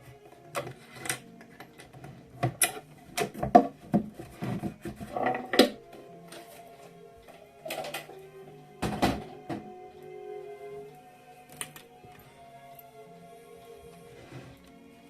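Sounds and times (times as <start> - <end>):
quiet background music: 0.0 - 15.0.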